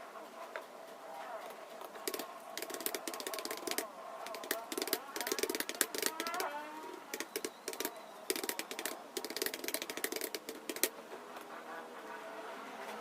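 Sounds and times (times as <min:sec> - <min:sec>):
computer keyboard typing: 0:01.8 - 0:11.0.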